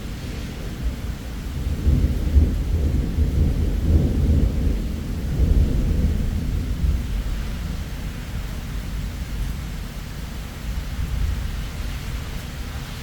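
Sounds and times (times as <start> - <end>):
faint rain hiss: 0.0 - 13.0
thunder rumbling: 0.2 - 9.2.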